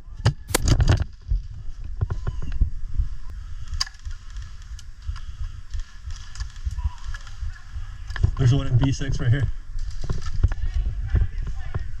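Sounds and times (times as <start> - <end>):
handling and wind rumble: 0.0 - 12.0.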